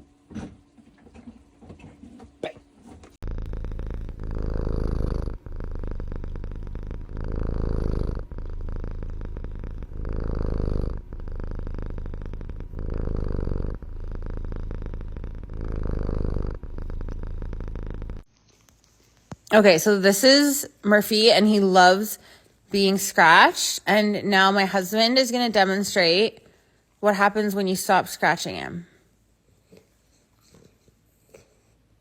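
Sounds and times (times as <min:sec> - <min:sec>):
cat purring loudly: 0:00.9 - 0:18.3.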